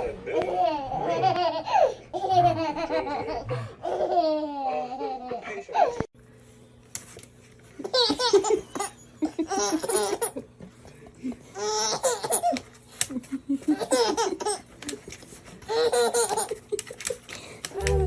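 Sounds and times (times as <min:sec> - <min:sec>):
baby laughing: 0:00.3 - 0:06.1, 0:07.8 - 0:10.5, 0:11.6 - 0:12.6, 0:13.6 - 0:14.7, 0:15.6 - 0:17.1.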